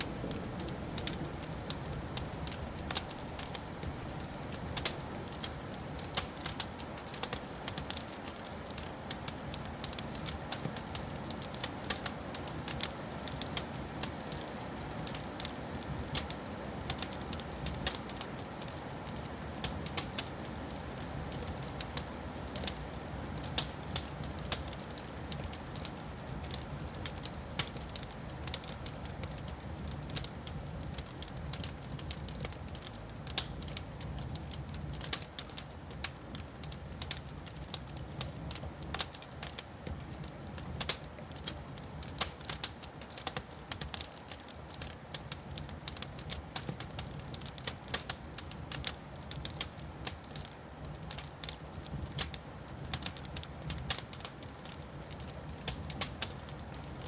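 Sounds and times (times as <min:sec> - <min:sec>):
wood fire crackling: 0:00.0 - 0:57.0.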